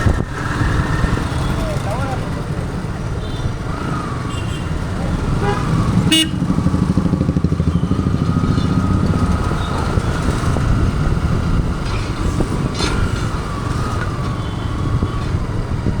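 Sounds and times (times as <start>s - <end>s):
motorcycle engine running: 0.0s - 11.8s.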